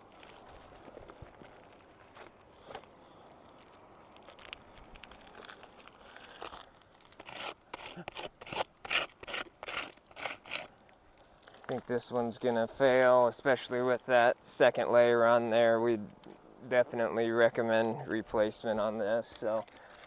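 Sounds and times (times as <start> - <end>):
crunching strokes on shingles: 0.0 - 11.9.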